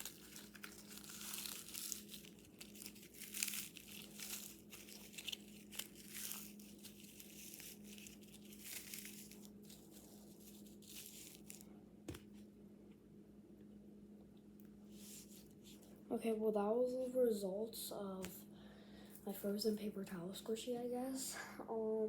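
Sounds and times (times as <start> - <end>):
paper towel crumpling and tearing: 0.0 - 11.7.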